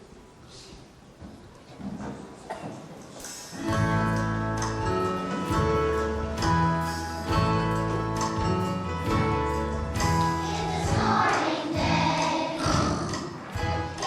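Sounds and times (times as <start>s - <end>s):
instrumental accompaniment with chords: 3.6s - 11.2s
children's choir singing: 10.0s - 14.0s.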